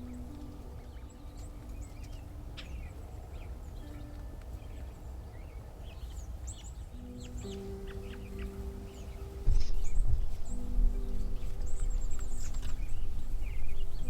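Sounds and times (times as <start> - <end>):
soft background music: 0.0 - 14.0
songbirds chirping: 0.0 - 14.0
low outdoor rumble: 7.4 - 14.0.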